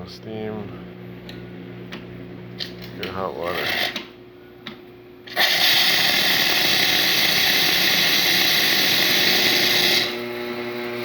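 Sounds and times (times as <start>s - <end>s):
espresso machine humming: 0.7s - 4.2s, 5.3s - 11.0s
espresso machine steam hissing: 5.4s - 10.2s.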